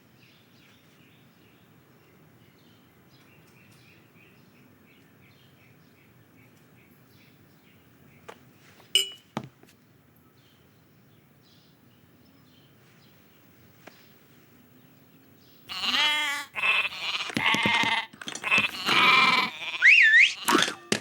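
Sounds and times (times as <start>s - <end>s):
sheep bleating: 15.7s - 21.0s.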